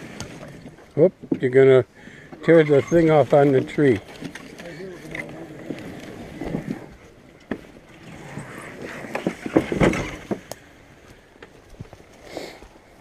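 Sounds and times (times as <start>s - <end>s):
cart knocking and rattling: 8.9s - 10.5s.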